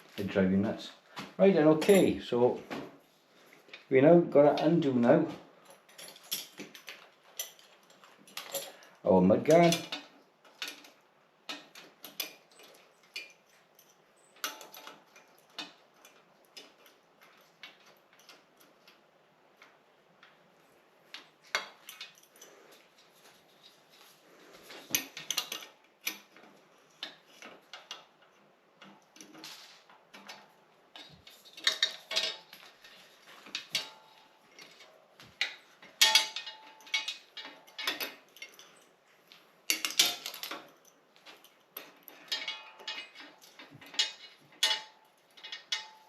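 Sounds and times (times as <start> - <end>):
spanner clanking on bicycle parts: 5.6 - 18.8, 24.7 - 38.9, 39.7 - 46.0.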